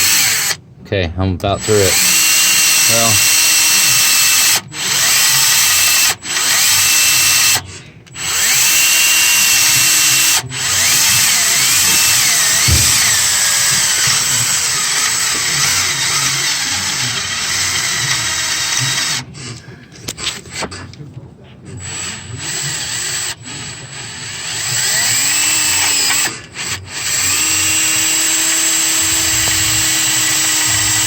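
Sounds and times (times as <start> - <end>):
power drill boring into metal: 0.0 - 0.6, 1.6 - 19.6, 21.8 - 31.0.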